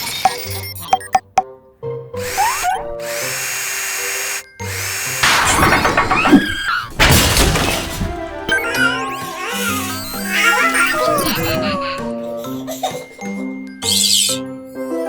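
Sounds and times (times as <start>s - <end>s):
cartoon background music: 0.0s - 15.0s
power tool whir: 2.2s - 7.0s
noisy clatter: 5.0s - 8.5s.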